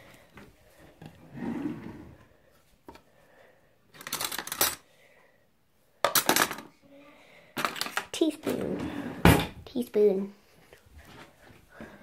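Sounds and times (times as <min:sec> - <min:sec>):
metal cutlery clattering: 0:04.0 - 0:04.8, 0:06.1 - 0:06.7.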